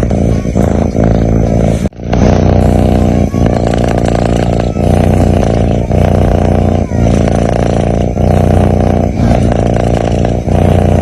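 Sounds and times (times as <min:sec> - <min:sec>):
cat purring breath: 0:00.0 - 0:11.0.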